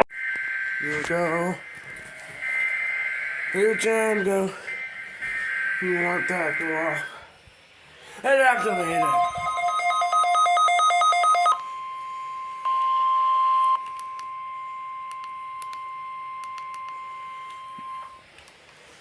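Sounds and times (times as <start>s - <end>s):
steady warning alarm tone: 0.0s - 18.3s
rapid pulsing two-note beep: 0.7s - 7.2s, 8.2s - 12.0s.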